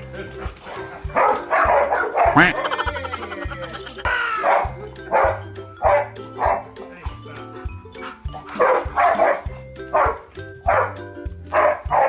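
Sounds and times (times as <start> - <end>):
dog barking: 0.3 - 2.6, 4.3 - 6.8, 8.0 - 12.0
background music with bass: 1.8 - 11.9.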